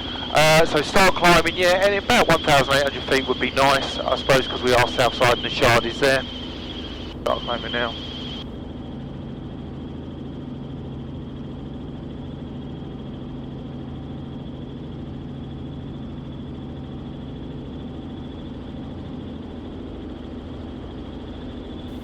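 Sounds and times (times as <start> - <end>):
high whine: 0.0 - 8.5
helicopter drone from inside cabin: 0.0 - 22.0.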